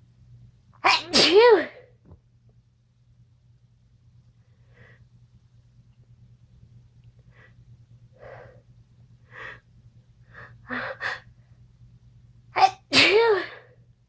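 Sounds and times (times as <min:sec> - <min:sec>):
person sneezing: 0:00.9 - 0:01.9, 0:12.6 - 0:13.7.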